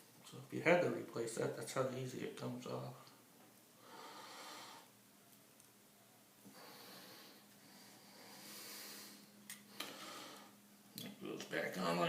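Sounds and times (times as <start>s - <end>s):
faint low hum: 0.0s - 12.0s
soft breaths close to microphone: 3.8s - 5.0s, 6.4s - 10.7s.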